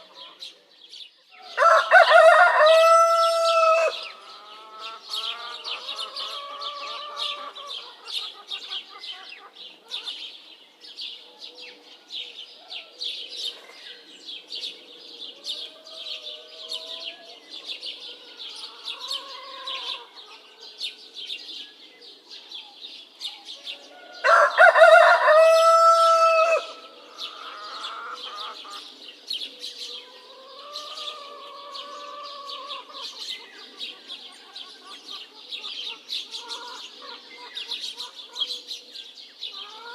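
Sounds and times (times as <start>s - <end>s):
small birds chirping: 0.0s - 39.9s
roosters crowing: 1.4s - 8.1s, 18.1s - 20.3s, 23.8s - 29.0s, 30.0s - 33.3s.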